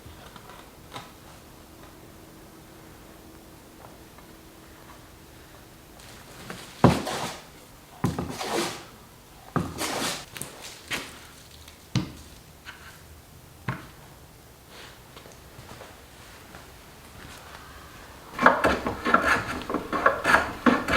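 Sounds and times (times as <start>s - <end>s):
wood scraping rub: 18.4s - 20.9s.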